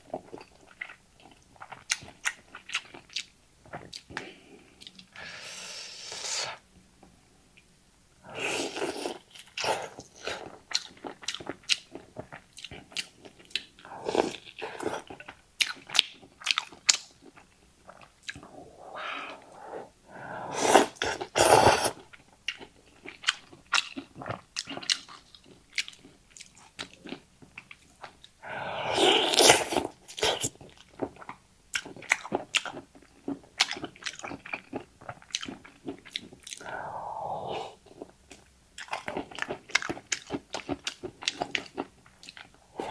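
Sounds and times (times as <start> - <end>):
chewing with wet clicks: 0.0 - 5.1, 9.1 - 18.5, 22.0 - 28.4, 29.7 - 36.8, 37.8 - 42.6
slurping noodles: 5.2 - 6.6, 8.3 - 10.6, 13.8 - 15.2, 18.3 - 22.0, 28.4 - 30.6, 36.5 - 38.0, 42.7 - 42.9.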